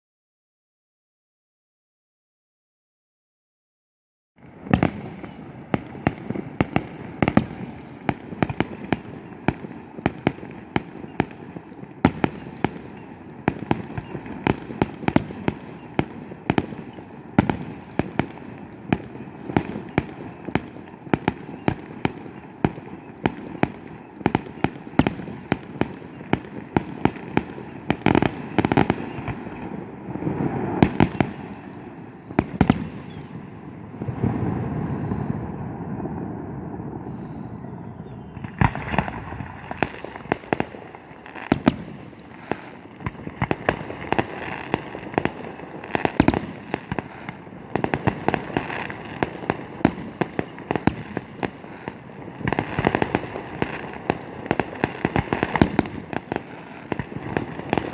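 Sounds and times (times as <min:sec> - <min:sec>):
fireworks banging: 0:33.9 - 0:51.2.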